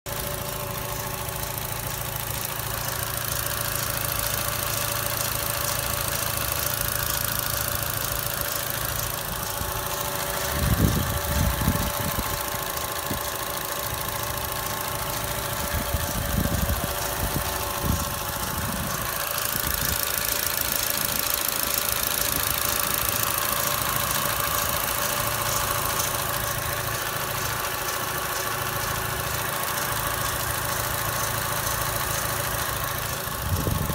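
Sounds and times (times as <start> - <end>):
engine idling: 0.0 - 33.9
rhythmic engine knock: 0.1 - 33.9.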